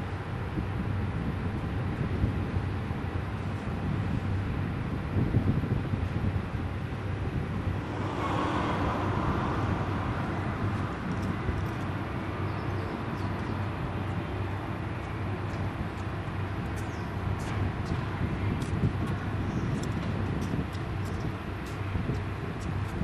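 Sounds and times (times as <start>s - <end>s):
outdoor noise: 0.0s - 23.0s
railcar engine hum: 0.0s - 23.0s
faint light ticks: 15.0s - 18.0s.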